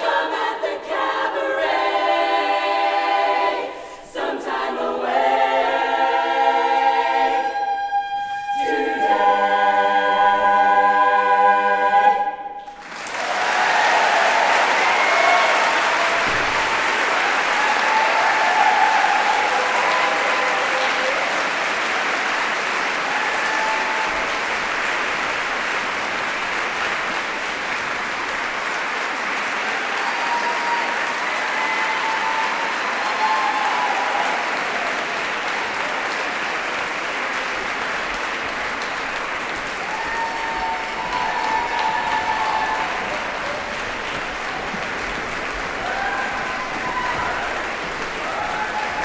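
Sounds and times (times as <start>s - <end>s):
audience applauding: 12.6s - 49.0s
crowd calls and cheers: 12.6s - 49.0s.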